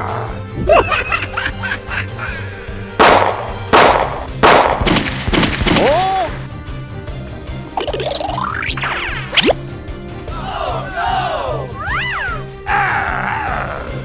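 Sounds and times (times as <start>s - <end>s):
background music with steady beat: 0.0s - 14.0s
comic sliding-pitch sound: 7.8s - 9.6s.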